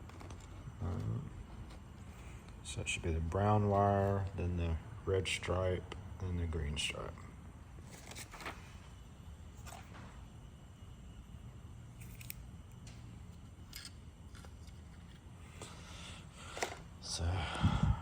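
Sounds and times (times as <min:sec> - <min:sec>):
small clicks and rustles: 0:00.0 - 0:01.8
steady low hum: 0:00.0 - 0:18.0.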